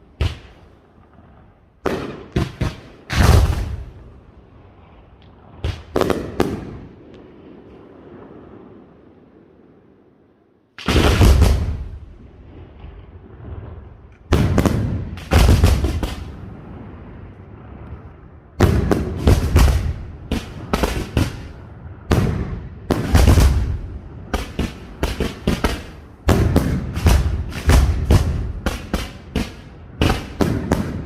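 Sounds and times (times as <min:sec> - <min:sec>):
faint firework crackling: 0:00.0 - 0:31.0
firework shells bursting: 0:23.0 - 0:31.0.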